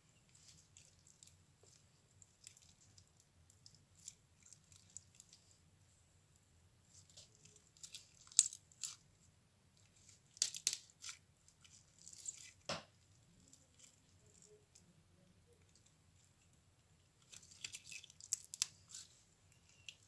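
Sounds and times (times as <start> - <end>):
slime popping and crackling: 7.1 - 9.0, 10.3 - 14.5, 17.2 - 19.0.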